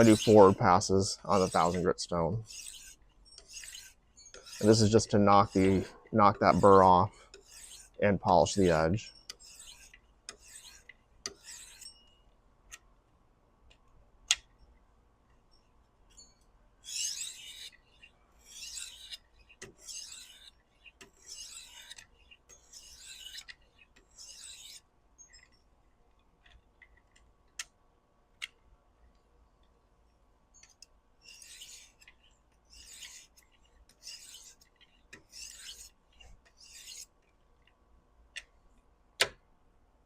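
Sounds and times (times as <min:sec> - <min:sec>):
knife scraping on sharpening stone: 0:00.0 - 0:12.2, 0:16.1 - 0:25.6, 0:30.6 - 0:37.1.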